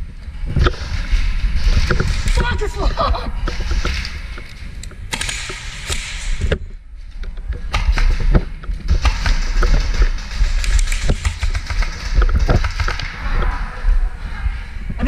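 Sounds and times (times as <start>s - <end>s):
sharp clicks and knocks: 3.4s - 13.6s
heavy low rumble of movement: 12.0s - 15.0s.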